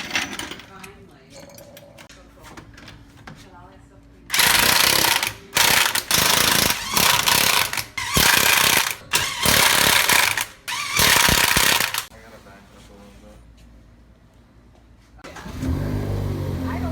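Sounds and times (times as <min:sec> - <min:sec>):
impact wrench hammering: 0:04.3 - 0:12.1.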